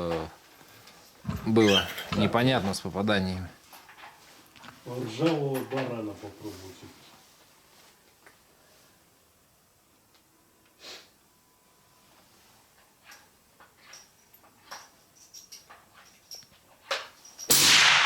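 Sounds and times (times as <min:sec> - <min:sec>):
loud rifle shot: 0:17.5 - 0:18.0.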